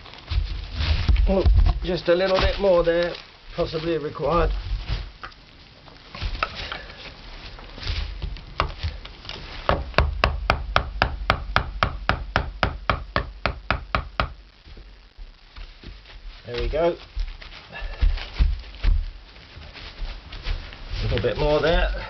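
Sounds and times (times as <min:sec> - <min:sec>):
rapid sharp knocks: 0:09.7 - 0:14.4.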